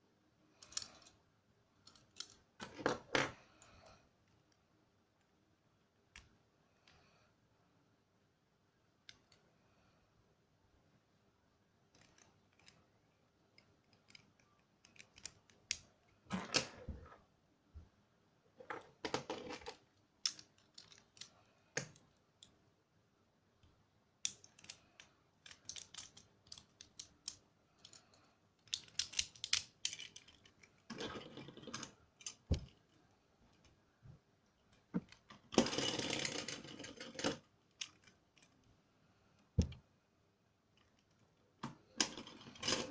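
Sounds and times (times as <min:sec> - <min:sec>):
plastic parts clicking together: 0:00.6 - 0:01.2, 0:01.8 - 0:03.1, 0:11.9 - 0:12.9, 0:13.5 - 0:17.0, 0:18.9 - 0:22.6, 0:23.6 - 0:33.8, 0:34.7 - 0:38.7.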